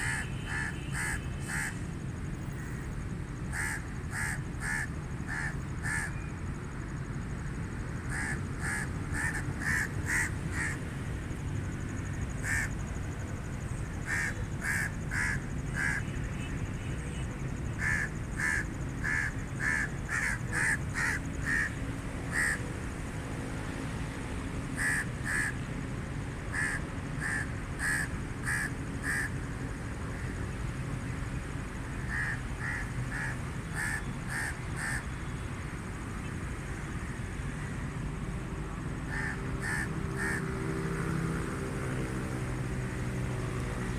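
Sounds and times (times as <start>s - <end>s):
crows cawing: 0.0s - 1.8s, 3.5s - 6.2s, 8.1s - 10.9s, 12.2s - 12.9s, 13.5s - 16.1s, 17.7s - 22.6s, 24.8s - 25.6s, 26.5s - 29.4s, 32.1s - 35.1s, 39.1s - 40.7s.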